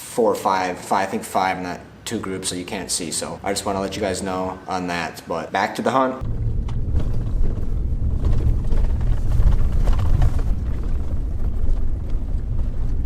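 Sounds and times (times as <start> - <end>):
wind buffeting the microphone: 6.2 - 13.0.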